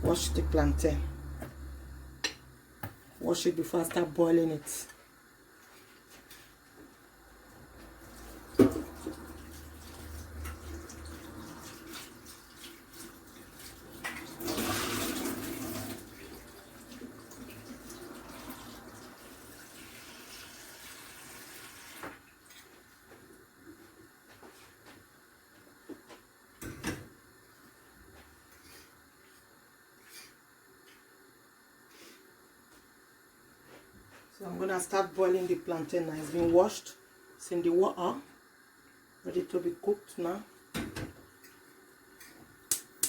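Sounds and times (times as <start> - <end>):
tap water running and splashing: 8.0 - 22.8.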